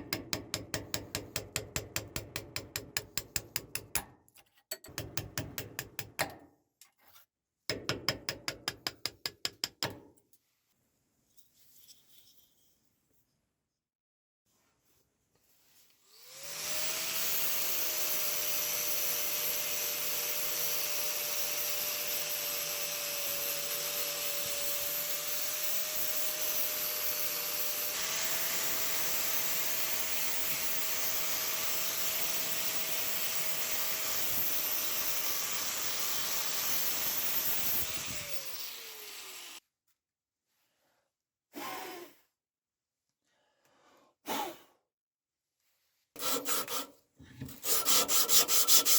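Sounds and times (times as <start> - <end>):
electric rotary power tool running: 16.2 - 39.6.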